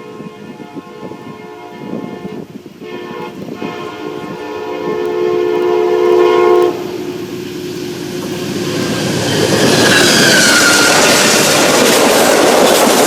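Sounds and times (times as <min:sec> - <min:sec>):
locomotive air horn chord: 0:00.0 - 0:07.4
passenger train on rails: 0:00.0 - 0:13.0.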